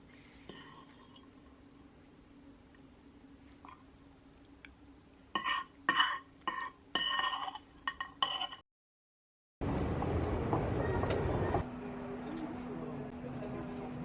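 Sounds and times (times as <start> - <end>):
crockery clinking: 5.4 - 8.6.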